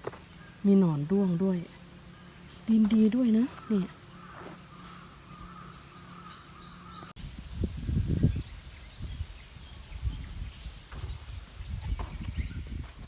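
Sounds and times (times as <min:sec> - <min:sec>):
low rumbling knocks on microphone: 0:10.9 - 0:13.0.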